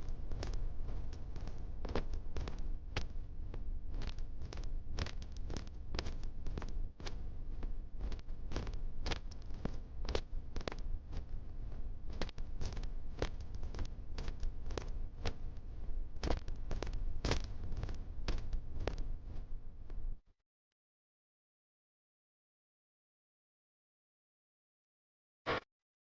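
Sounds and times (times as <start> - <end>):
boots marching on hard surface: 12.1 - 19.5.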